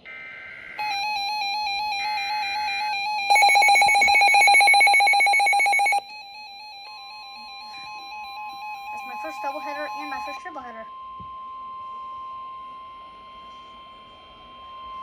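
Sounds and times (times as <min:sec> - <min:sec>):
warbling data tones: 0:00.0 - 0:06.0, 0:08.7 - 0:10.9
rapidly pulsing alarm: 0:00.0 - 0:15.0.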